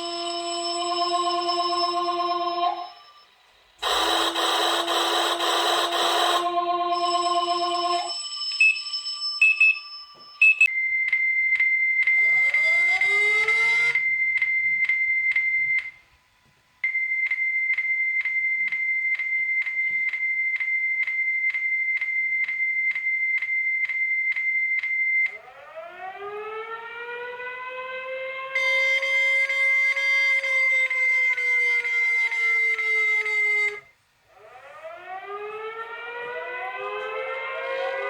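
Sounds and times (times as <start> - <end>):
siren winding up: 0.0 - 8.8, 10.4 - 16.0, 25.2 - 38.0
pulsed high-pitched alarm tone: 0.0 - 10.7, 11.3 - 15.9, 28.5 - 38.0.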